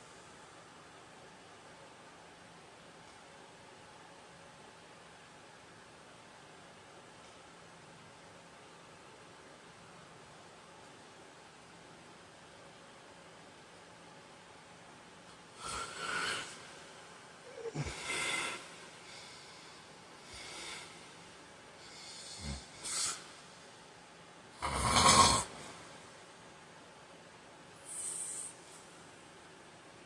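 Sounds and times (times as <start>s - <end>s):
man snoring: 15.6s - 16.5s, 17.5s - 18.7s, 21.8s - 23.2s, 24.6s - 25.8s.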